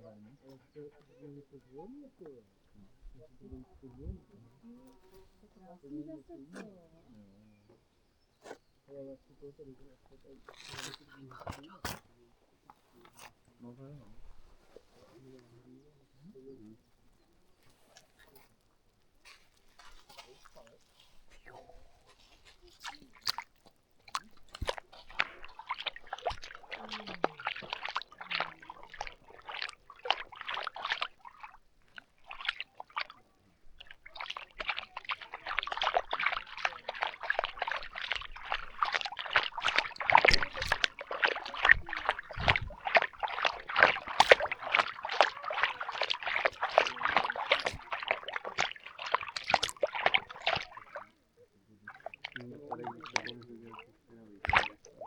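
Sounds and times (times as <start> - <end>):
dog splashing through water: 10.3 - 12.0, 19.2 - 55.0.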